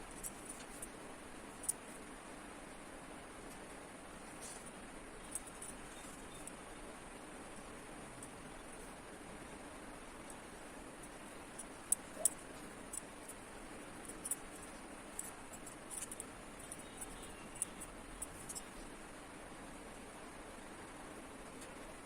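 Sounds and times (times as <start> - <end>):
brush dabbing on paper: 10.3 - 18.9.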